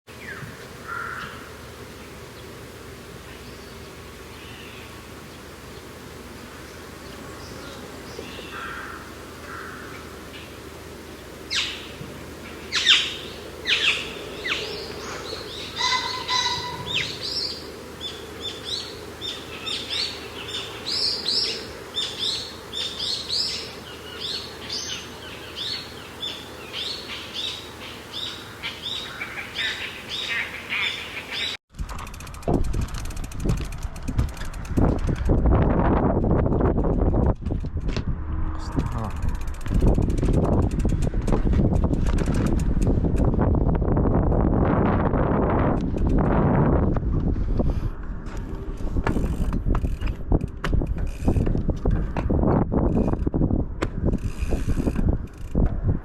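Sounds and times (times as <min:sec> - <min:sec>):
birds chirping: 0:03.2 - 0:31.6.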